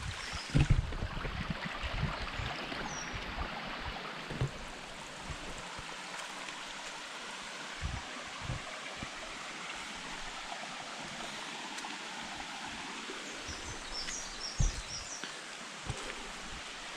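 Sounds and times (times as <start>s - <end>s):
stream water running: 0.0s - 16.9s
thumps on microphone: 0.5s - 1.0s, 4.3s - 4.7s, 14.5s - 15.0s.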